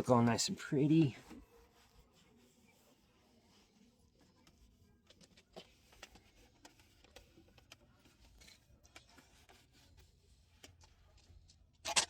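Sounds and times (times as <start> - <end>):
towel wiping bodywork: 0.0 - 8.3.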